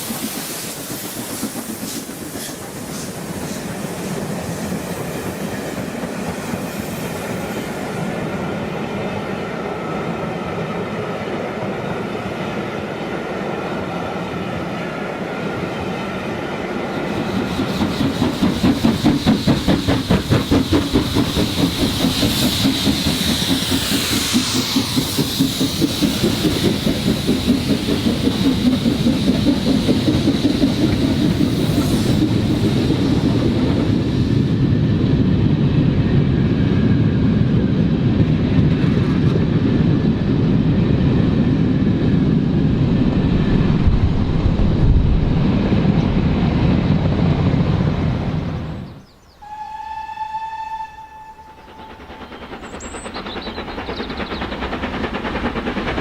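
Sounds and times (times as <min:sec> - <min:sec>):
model train whine: 0:47.3 - 0:56.0
model train wheels clicking: 0:51.6 - 0:56.0.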